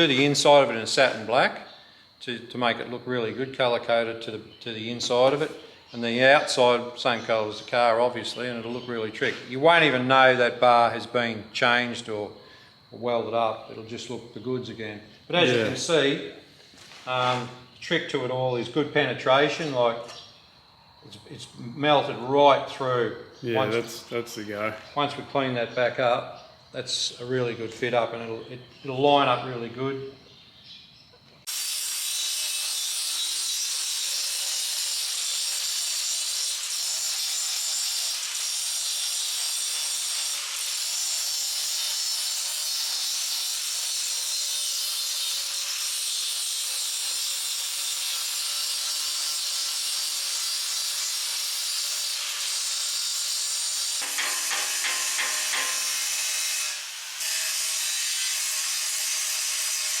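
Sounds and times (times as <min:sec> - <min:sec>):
angle grinder grinding metal: 0:31.5 - 1:00.0.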